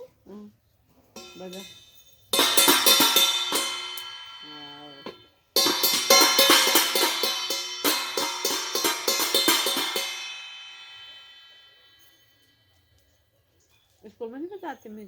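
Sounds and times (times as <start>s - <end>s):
cymbals ringing: 1.2s - 13.0s
drum hits: 2.4s - 11.7s.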